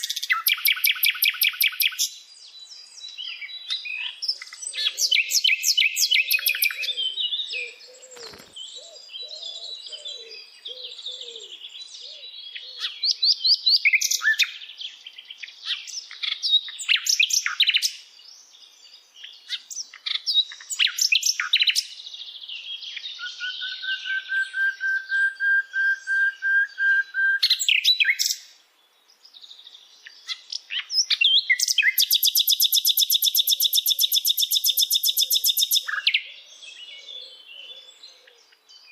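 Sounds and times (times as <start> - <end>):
birds singing and chirping: 0.0 - 38.9
bird trilling: 4.7 - 11.5, 31.0 - 36.2.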